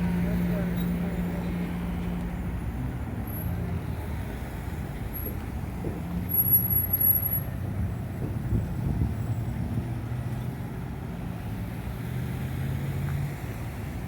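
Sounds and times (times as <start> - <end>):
truck or bus passing: 0.0 - 14.0
vehicles passing: 0.0 - 14.0.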